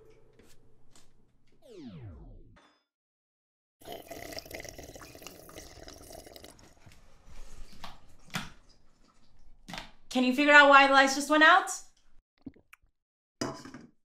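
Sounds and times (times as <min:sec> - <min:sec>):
falling power-down tone: 0:01.6 - 0:02.6.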